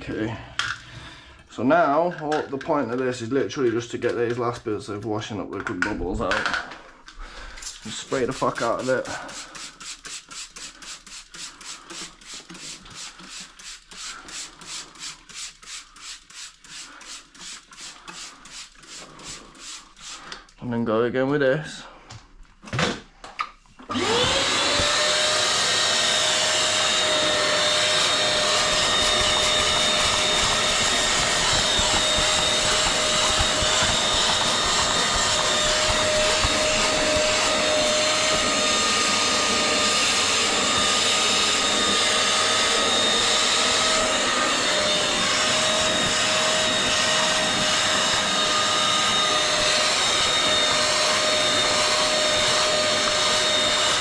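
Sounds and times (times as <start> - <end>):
vacuum extractor motor whine: 23.9 - 54.0.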